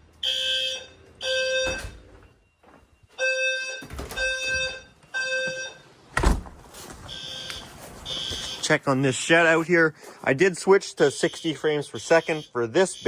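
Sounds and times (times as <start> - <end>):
fire alarm horn blasts: 0.2 - 2.0, 3.1 - 5.8, 7.1 - 8.8, 11.2 - 13.0
thump: 6.2 - 6.6.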